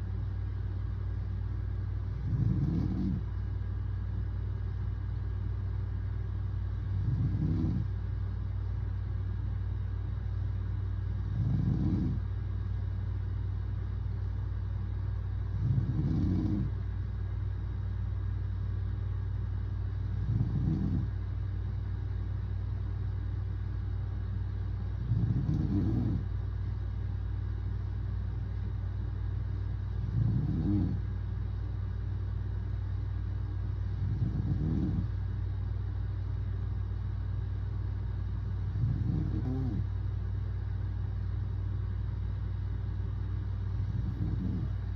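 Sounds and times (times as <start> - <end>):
steady low hum: 0.0 - 44.9
man snoring: 2.2 - 3.2, 6.9 - 7.9, 11.3 - 12.2, 15.6 - 16.7, 20.2 - 21.1, 25.0 - 26.2, 30.0 - 31.0, 34.0 - 35.1, 38.7 - 39.8, 43.9 - 44.8.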